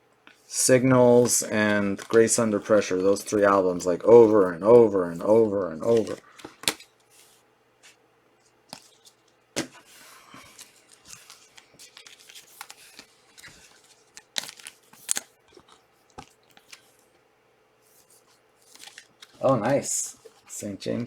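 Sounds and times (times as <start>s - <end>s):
cards clicking and tapping: 0.3s - 6.8s
wrapper rustling and crinkling: 0.4s - 7.4s, 8.7s - 17.0s, 18.0s - 20.6s.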